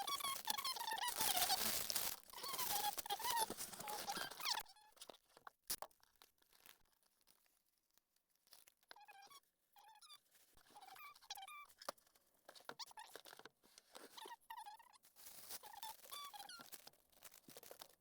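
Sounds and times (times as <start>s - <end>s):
hands packing a cardboard box: 0.4s - 4.6s.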